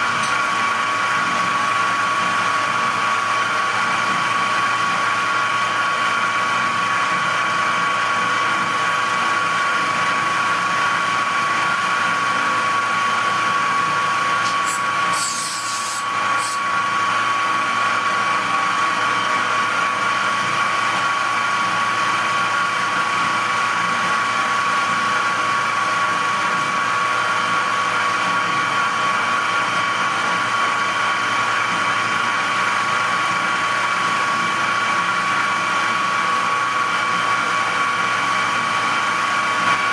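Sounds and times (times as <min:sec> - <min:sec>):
metal-cutting machine whine: 0:00.0 - 0:39.9
brief high hiss: 0:14.4 - 0:16.6.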